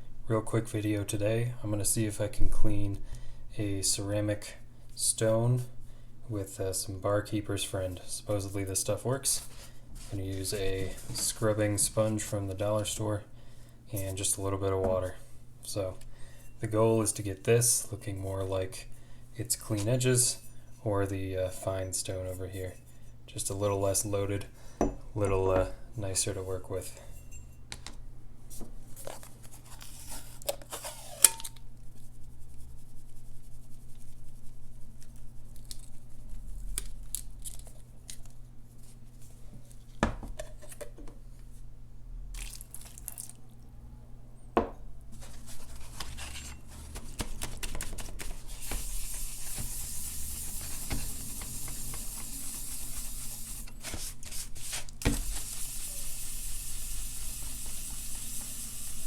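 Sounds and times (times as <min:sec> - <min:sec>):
sponge scrubbing a stone: 0:48.2 - 0:59.0.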